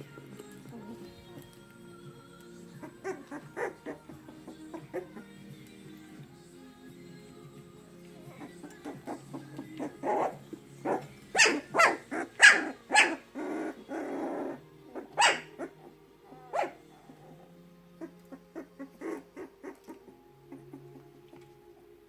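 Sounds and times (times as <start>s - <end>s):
puppy growling: 2.7s - 5.5s, 8.0s - 21.9s
puppies yelping: 2.8s - 5.3s, 8.4s - 21.1s.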